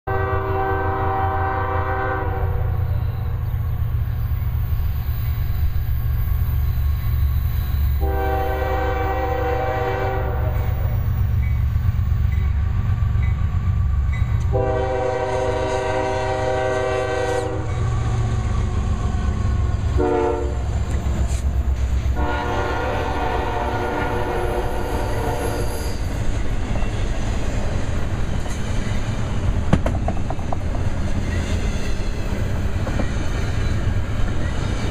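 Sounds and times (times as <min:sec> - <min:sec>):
train air horn blasts: 0:00.1 - 0:02.9, 0:07.9 - 0:10.9, 0:14.5 - 0:17.8, 0:19.9 - 0:20.7, 0:22.1 - 0:26.1
diesel locomotive rumble: 0:00.1 - 0:34.9.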